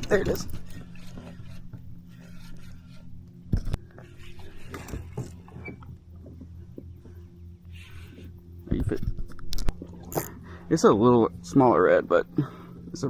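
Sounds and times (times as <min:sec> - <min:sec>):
scraping and rubbing handling noise: 0:00.0 - 0:06.6
steady low hum: 0:00.0 - 0:13.0.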